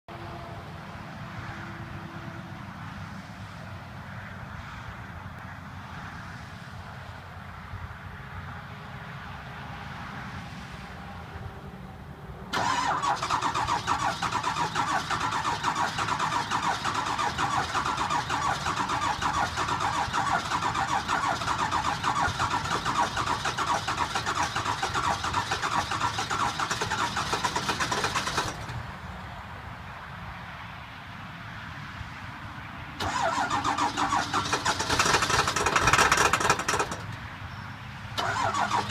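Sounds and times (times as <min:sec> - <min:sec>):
diesel engine starter cranking: 0:12.5 - 0:28.8, 0:33.0 - 0:37.2, 0:38.2 - 0:38.9.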